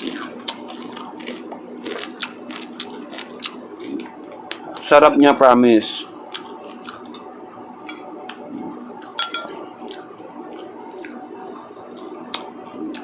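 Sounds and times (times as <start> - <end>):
utensils clinking against a bowl: 9.1 - 10.0.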